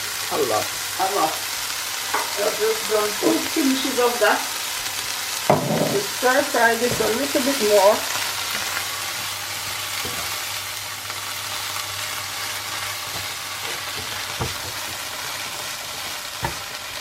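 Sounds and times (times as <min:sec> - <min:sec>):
vegetables sizzling in a pan: 0:00.0 - 0:17.0
utensil knocking against pan: 0:05.5 - 0:06.0.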